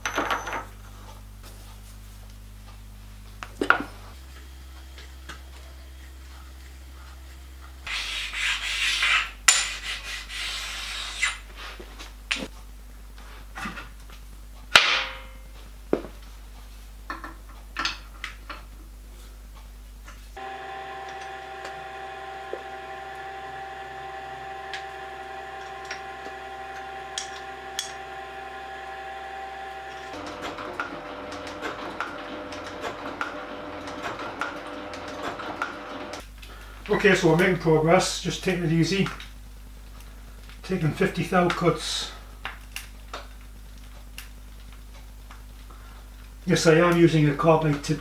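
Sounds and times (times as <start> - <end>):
loud metal clang: 14.8 - 15.5
machine motor humming: 20.4 - 36.3.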